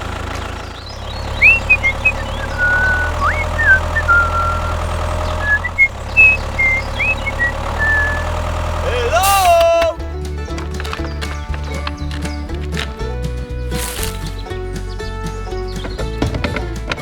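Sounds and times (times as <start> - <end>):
toy tractor motor hum: 0.0 - 17.0
short high chirps: 1.4 - 4.8, 5.4 - 8.3.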